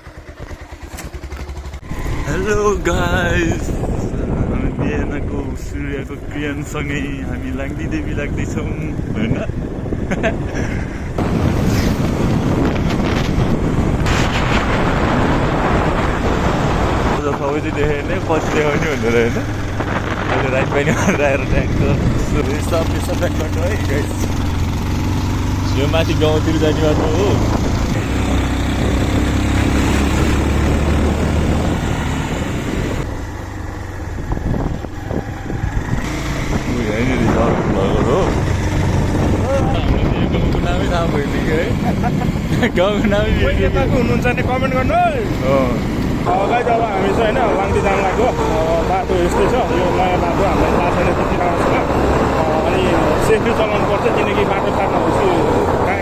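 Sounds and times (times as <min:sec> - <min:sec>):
motorcycle rumble: 0:00.0 - 0:56.0
wind buffeting microphone: 0:00.1 - 0:56.0.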